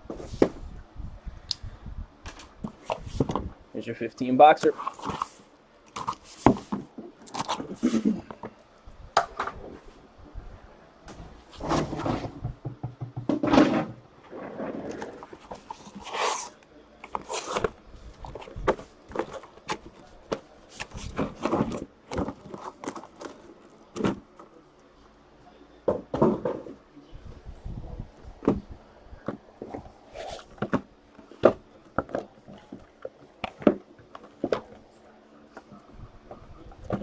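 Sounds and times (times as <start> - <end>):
cardboard boxes being handled: 2.3 - 3.6, 4.5 - 8.6, 13.6 - 24.6, 27.5 - 37.0.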